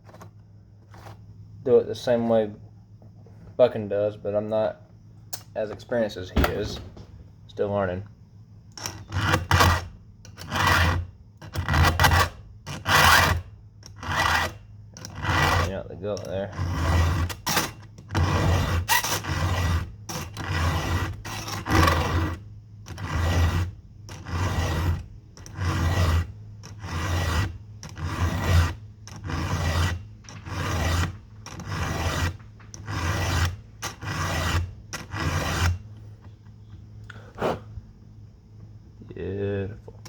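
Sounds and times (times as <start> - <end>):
file scraping chainsaw chain: 8.7 - 35.9.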